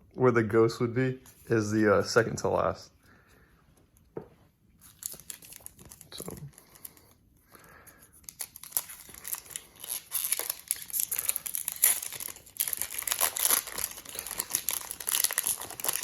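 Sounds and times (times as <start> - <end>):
foil wrapper crinkling and tearing: 4.8 - 7.2, 8.1 - 16.0.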